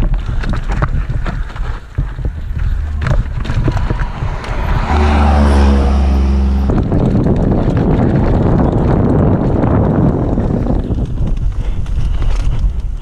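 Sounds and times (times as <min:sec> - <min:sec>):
mountain bike rattling: 0:00.0 - 0:13.0
wind noise on microphone: 0:00.0 - 0:13.0
steady low hum: 0:01.8 - 0:07.3.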